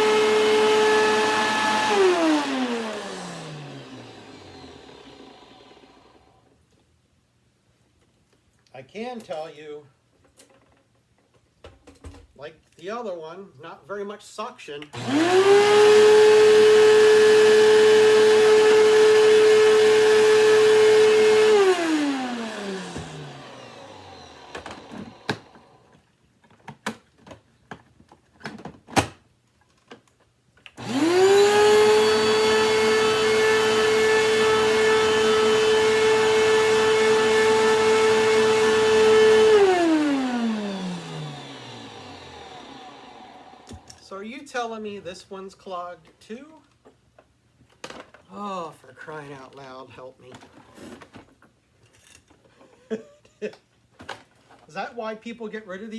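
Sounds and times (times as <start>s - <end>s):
vacuum cleaner motor whining: 0.0s - 6.4s, 15.0s - 26.0s, 30.8s - 44.1s.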